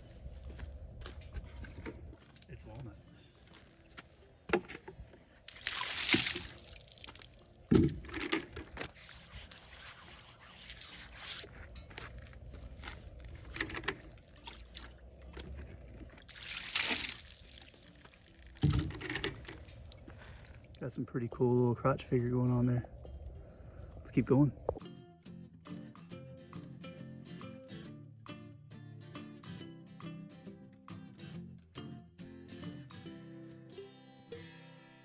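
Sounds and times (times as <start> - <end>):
water splashing on wood: 5.4 - 21.0.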